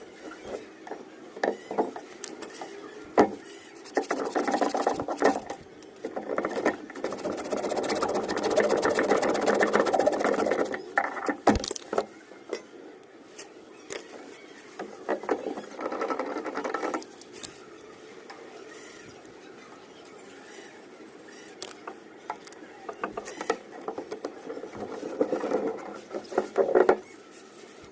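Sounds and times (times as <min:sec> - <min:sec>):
rasping on plastic pipe: 0:03.8 - 0:11.1.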